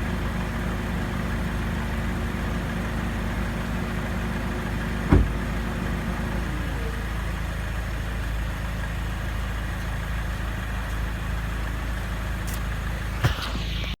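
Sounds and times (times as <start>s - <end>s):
car engine idling: 0.0s - 14.0s
sharp thump: 5.1s - 5.4s, 13.2s - 14.0s.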